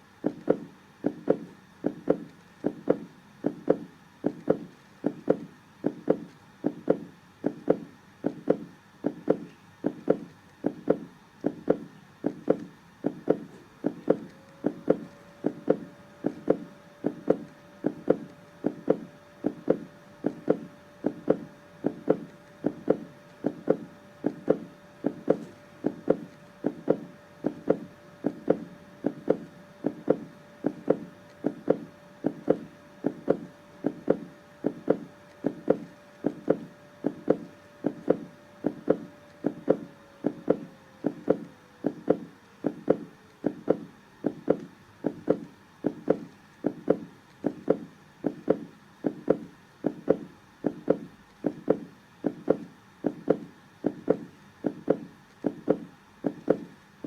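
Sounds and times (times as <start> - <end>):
heartbeat double thumps: 0.2 - 56.8.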